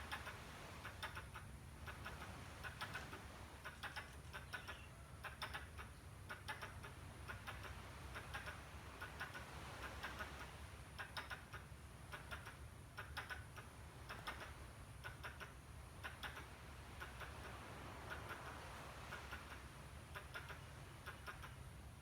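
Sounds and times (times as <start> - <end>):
squirrel clicking calls: 0.0 - 22.0.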